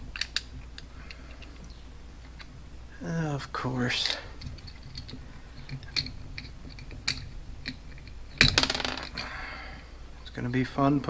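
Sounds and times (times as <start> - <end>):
plastic gear parts clicking: 0.1 - 1.7, 4.0 - 9.2
plastic pieces clattering loose: 0.1 - 2.5, 3.9 - 9.4.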